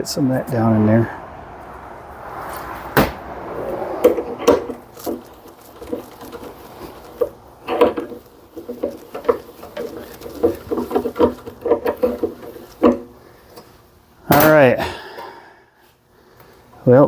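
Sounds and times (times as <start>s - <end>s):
clicks and clunks of hand work: 4.0s - 13.7s.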